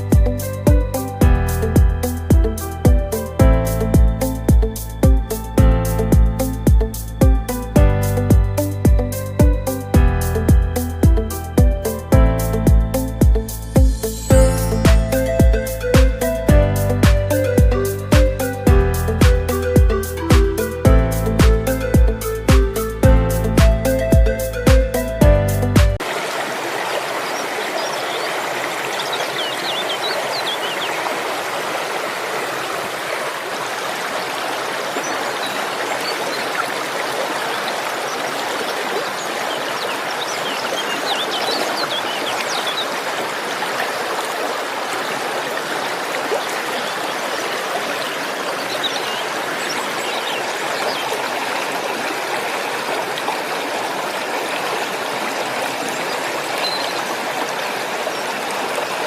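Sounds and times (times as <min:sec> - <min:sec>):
waterfall rushing: 0:13.0 - 0:25.3, 0:25.9 - 0:59.0
faint bird chirps: 0:27.3 - 0:31.0, 0:55.9 - 0:57.1.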